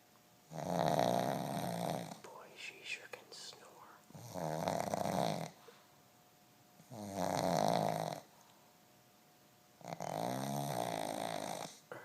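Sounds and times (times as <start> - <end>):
dog snoring: 0.4 - 2.2, 4.1 - 5.6, 6.8 - 8.3, 9.8 - 12.0.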